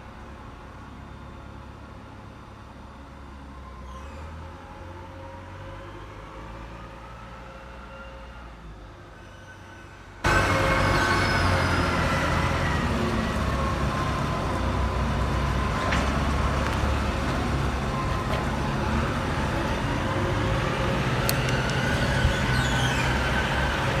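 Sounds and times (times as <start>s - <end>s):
diesel engine running: 10.2s - 24.0s.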